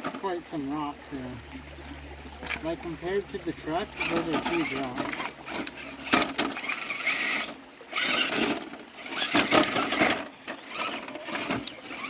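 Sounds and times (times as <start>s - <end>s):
knocks and scrapes on rocks: 0.0s - 0.6s, 2.4s - 12.0s
toy car motor and gears whining: 2.5s - 12.0s.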